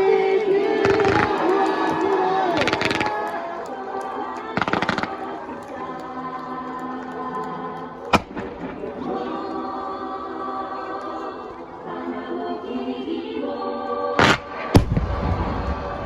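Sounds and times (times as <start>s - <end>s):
choral singing: 0.0s - 16.0s
fireworks bursting: 0.7s - 6.0s, 14.2s - 16.0s.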